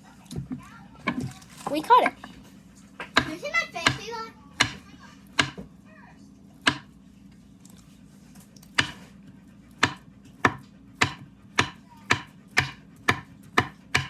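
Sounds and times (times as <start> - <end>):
knife knocking on cutting surface: 3.0 - 4.0, 4.6 - 4.8, 5.4 - 5.7, 6.7 - 6.9, 9.8 - 14.0
knife slicing banana: 8.7 - 9.1, 9.8 - 14.0.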